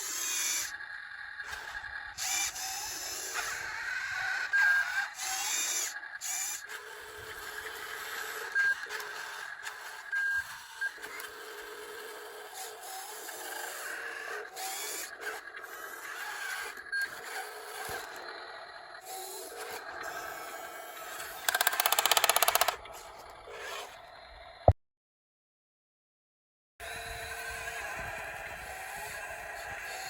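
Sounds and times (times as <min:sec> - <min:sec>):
small electric motors whirring: 0:21.5 - 0:22.8.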